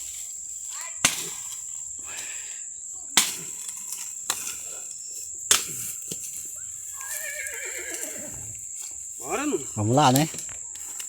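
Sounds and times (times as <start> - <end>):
high insect trill: 0.0 - 11.0
blade chopping into wood: 3.2 - 4.6, 5.5 - 6.2.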